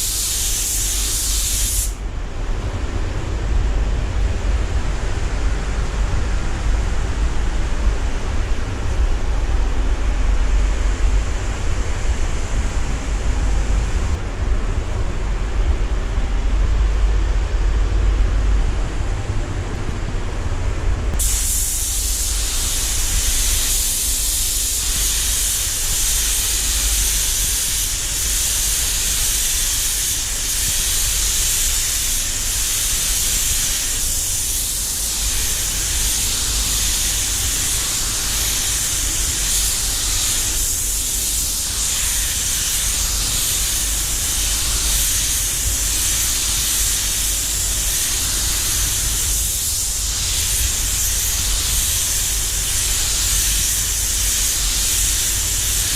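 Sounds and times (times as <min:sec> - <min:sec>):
air spray gun hissing: 0:00.0 - 0:02.0, 0:21.2 - 0:55.9
constant low rumble: 0:00.0 - 0:55.9.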